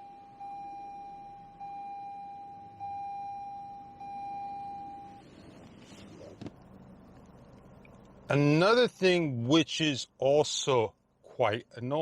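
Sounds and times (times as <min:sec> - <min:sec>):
seatbelt warning chime: 0:00.0 - 0:05.4.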